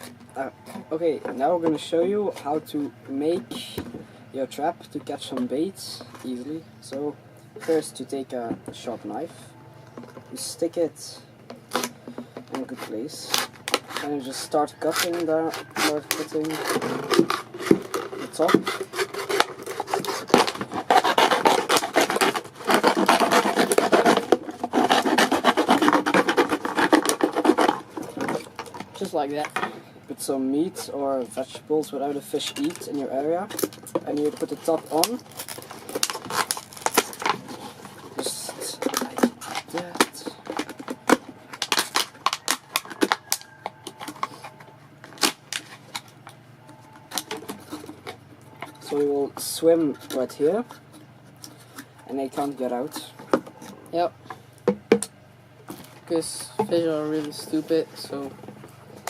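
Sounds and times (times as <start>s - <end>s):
knife sawing plastic bottle: 11.7s - 29.1s, 32.4s - 44.4s.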